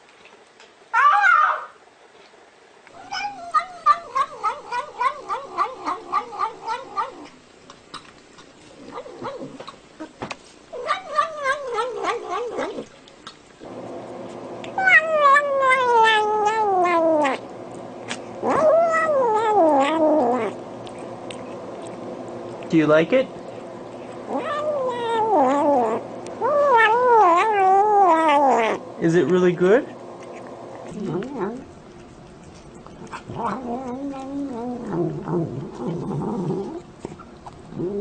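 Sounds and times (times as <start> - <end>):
cat yowling: 0.9 - 1.8, 3.0 - 7.3, 10.7 - 12.9, 14.8 - 17.4, 18.4 - 20.6, 24.3 - 28.8, 30.8 - 31.6, 33.0 - 35.4.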